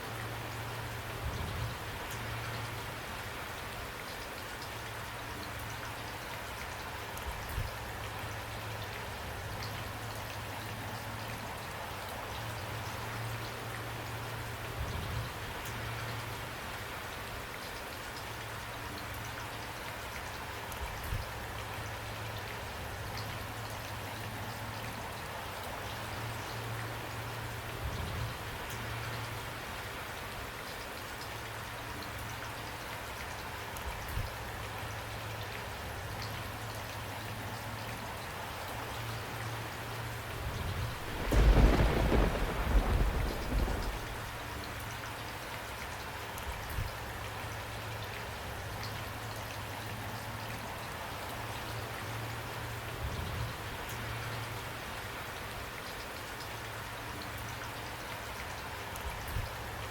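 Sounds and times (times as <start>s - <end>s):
steady rain falling: 0.0s - 59.9s
loud low thunder rumble: 40.7s - 44.4s.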